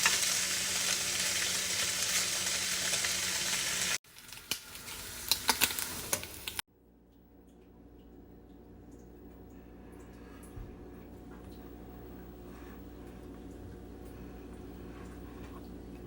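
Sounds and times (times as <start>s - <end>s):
batter sizzling in a frying pan: 0.0s - 6.6s.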